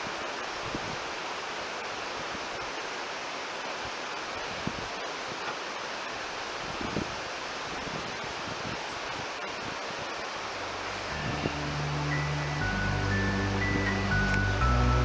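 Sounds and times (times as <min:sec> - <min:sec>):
mountain river rushing: 0:00.0 - 0:15.0
background music: 0:10.5 - 0:15.0.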